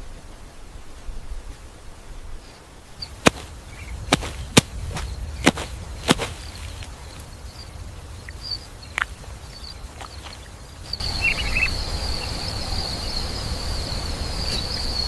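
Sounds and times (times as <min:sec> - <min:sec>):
steady low rumble: 0:02.9 - 0:13.9.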